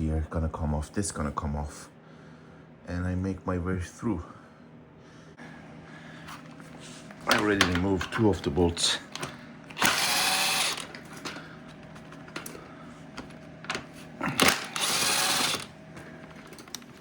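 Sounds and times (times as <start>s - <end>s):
cordless drill spinning bolts: 9.1s - 11.4s, 14.4s - 17.0s.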